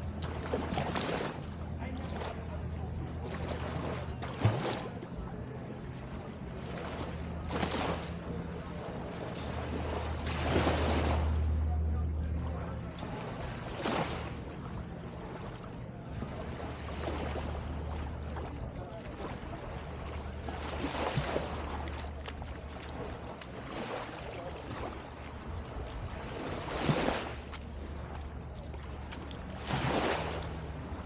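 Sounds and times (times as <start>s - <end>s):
small waves breaking on beach: 0.0s - 5.3s, 6.0s - 11.7s, 12.4s - 31.0s
steady low hum: 0.0s - 31.0s.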